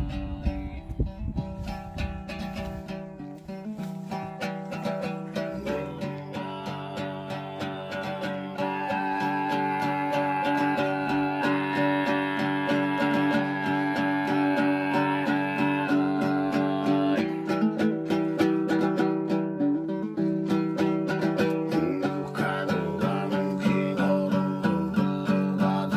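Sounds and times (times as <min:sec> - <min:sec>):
plucked string instrument strumming: 0:00.0 - 0:25.9
held drone note: 0:05.3 - 0:17.6.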